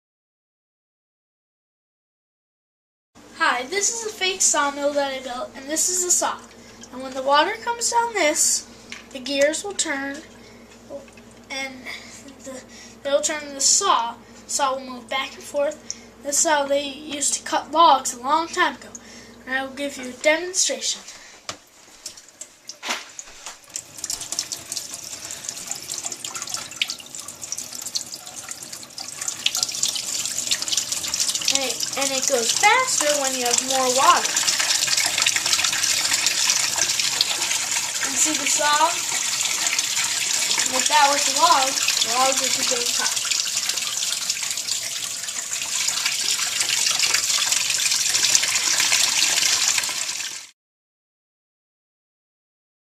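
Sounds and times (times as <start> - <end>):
water splashing down a chute: 22.0 - 50.5.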